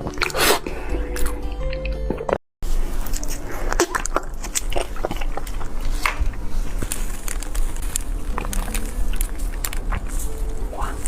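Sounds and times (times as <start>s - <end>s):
person chewing: 0.0s - 2.1s, 2.8s - 11.0s
wet mouth clicks: 3.2s - 6.2s.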